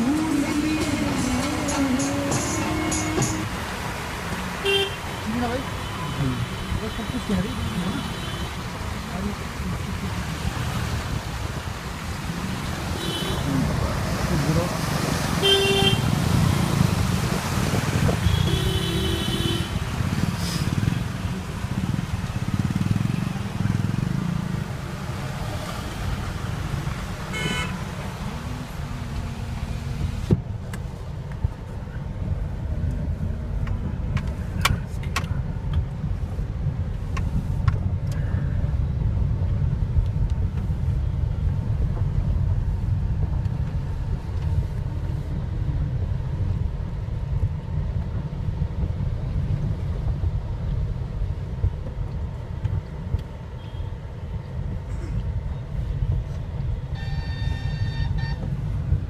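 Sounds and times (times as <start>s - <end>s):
traffic low rumble: 0.0s - 59.0s
car horns tooting: 15.4s - 16.2s, 27.3s - 28.0s, 56.9s - 58.6s.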